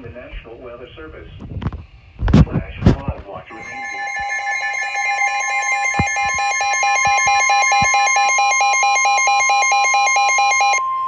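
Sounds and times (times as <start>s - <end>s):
steady piercing beep: 3.5s - 10.9s
pulsing two-tone alarm: 3.5s - 11.0s.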